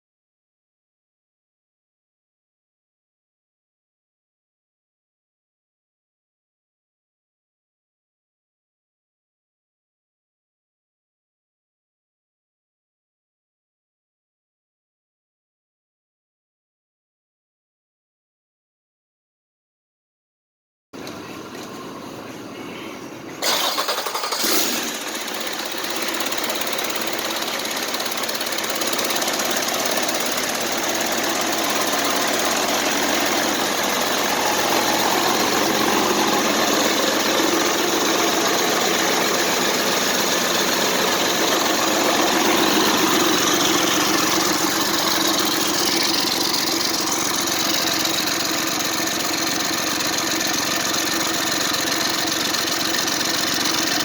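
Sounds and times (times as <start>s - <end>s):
diesel truck engine starting and running: 21.0s - 54.0s.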